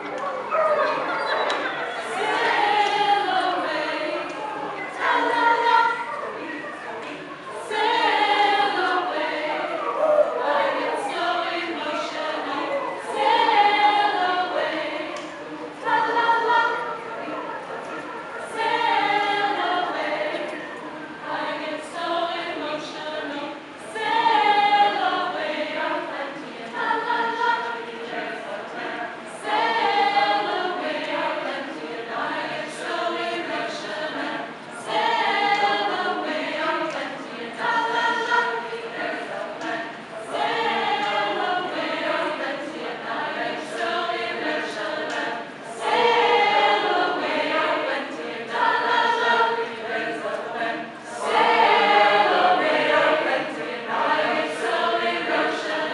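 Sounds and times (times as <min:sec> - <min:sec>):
chorus singing a cappella: 0:00.0 - 0:55.9.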